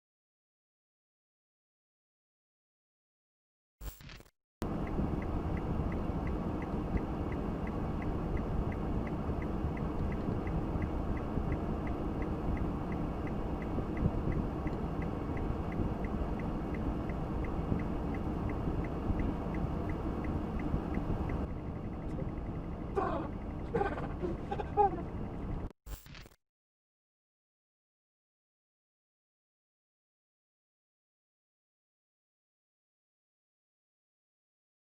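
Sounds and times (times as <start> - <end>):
car road and engine noise: 4.6 - 25.8
faint regular ticking: 4.7 - 21.5.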